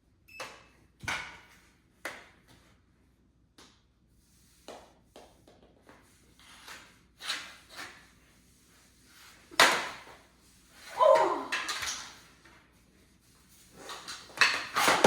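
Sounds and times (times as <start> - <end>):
mini hockey sticks and ball clacking: 9.6 - 10.2, 10.8 - 12.4, 13.8 - 15.0.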